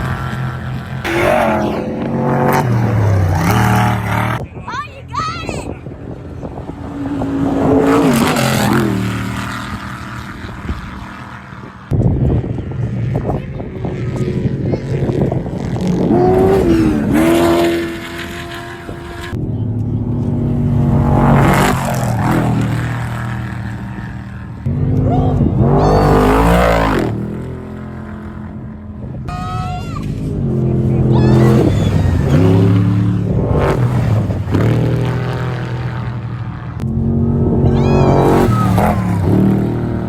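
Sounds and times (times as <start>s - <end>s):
off-road vehicles passing at full throttle: 0.0s - 40.0s.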